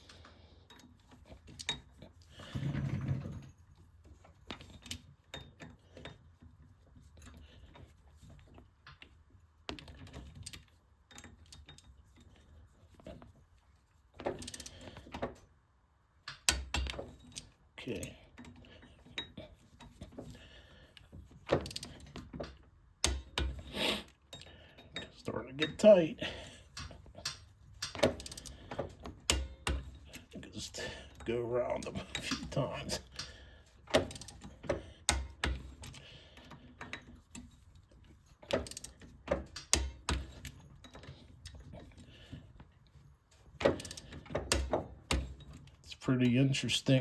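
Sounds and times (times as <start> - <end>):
ratcheting torque wrench: 14.4 - 14.9, 21.5 - 22.1, 26.7 - 30.2, 32.0 - 36.0, 38.5 - 40.6, 43.6 - 45.6
metal clicks: 26.7 - 30.3, 31.8 - 37.6, 38.4 - 42.0, 43.6 - 45.8.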